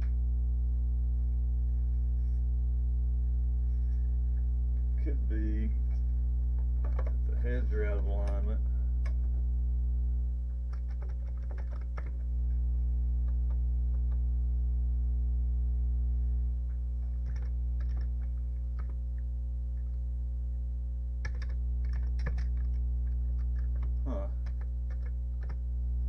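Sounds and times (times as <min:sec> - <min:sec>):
low electrical hum: 0:00.0 - 0:26.0
keyboard keys clicking: 0:06.8 - 0:07.2, 0:10.7 - 0:12.2, 0:17.2 - 0:19.0, 0:21.2 - 0:25.6.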